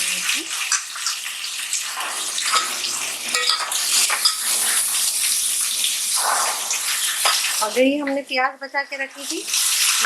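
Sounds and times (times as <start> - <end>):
meat sizzling in hot oil: 0.0 - 10.0
utensils clinking against pan: 2.4 - 5.1.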